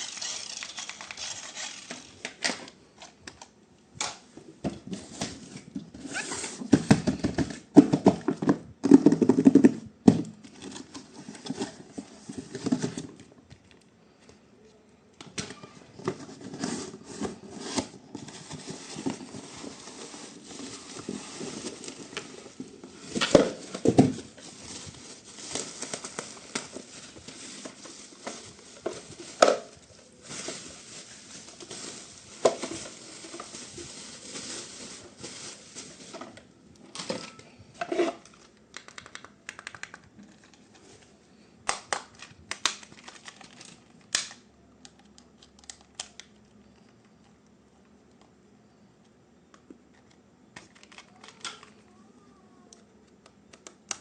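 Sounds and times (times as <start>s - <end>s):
plastic packaging crinkling: 0.0s - 4.2s, 15.6s - 47.3s, 50.6s - 52.0s.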